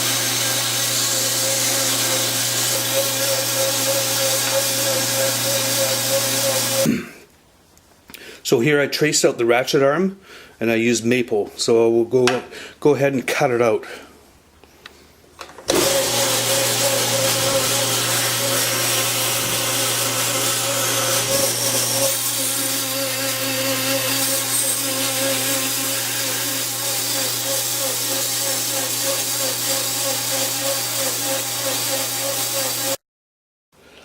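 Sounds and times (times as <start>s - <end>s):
bandsaw running: 0.0s - 7.0s, 15.7s - 33.0s.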